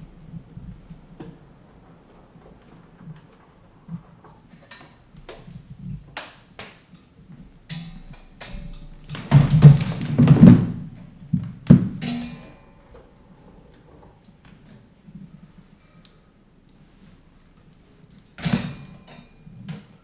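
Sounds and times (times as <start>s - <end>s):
sharp knocks: 8.0s - 12.3s
clunks and rattling: 8.0s - 12.4s.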